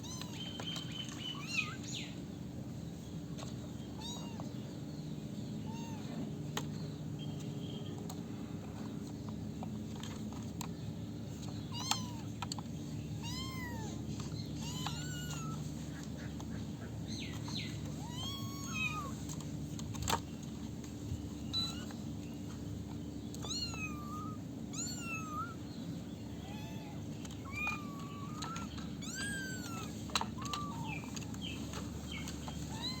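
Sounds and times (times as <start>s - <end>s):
kittens meowing: 0.0s - 2.0s, 3.9s - 4.6s, 5.6s - 6.3s, 11.7s - 12.4s, 13.1s - 19.5s, 21.4s - 22.0s, 23.3s - 33.0s
steady low hum: 0.0s - 33.0s.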